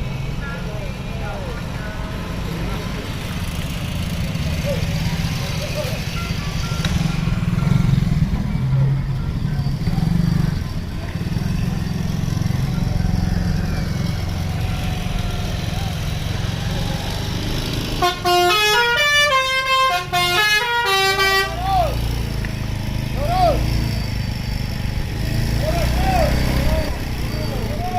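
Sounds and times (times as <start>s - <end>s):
bus engine rumbling: 0.0s - 27.9s
musical bus horn tune: 17.9s - 21.8s.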